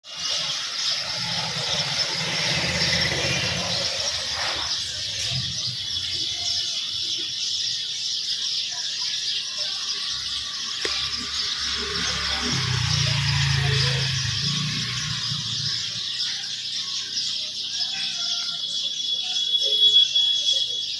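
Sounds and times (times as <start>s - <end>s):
sparrows chirping: 0.0s - 20.9s.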